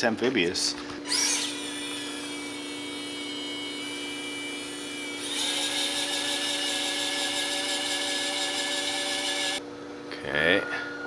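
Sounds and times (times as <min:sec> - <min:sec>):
small electric motor whining: 0:01.0 - 0:09.6.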